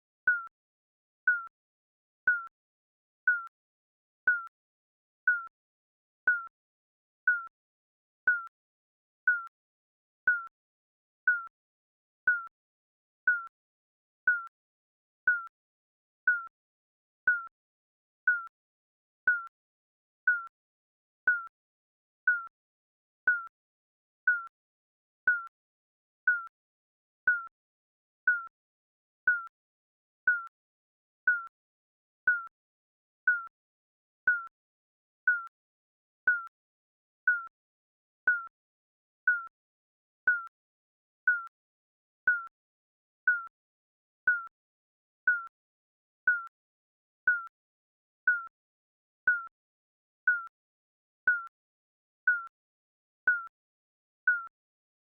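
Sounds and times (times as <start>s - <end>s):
timer beeping: 0.3s - 0.5s, 4.3s - 4.5s, 6.3s - 6.5s, 8.3s - 8.5s, 9.3s - 9.5s, 11.3s - 11.5s, 12.3s - 12.5s, 13.3s - 13.5s, 14.3s - 14.5s, 16.3s - 16.5s, 18.3s - 18.5s, 21.3s - 21.5s, 22.3s - 22.5s, 23.3s - 23.5s, 26.3s - 26.5s, 28.3s - 28.5s, 29.3s - 29.5s, 30.3s - 30.5s, 31.3s - 31.5s, 38.3s - 38.5s, 40.3s - 40.5s, 44.3s - 44.5s, 45.3s - 45.5s, 46.3s - 46.5s, 49.3s - 49.5s, 50.3s - 50.5s, 54.3s - 54.5s.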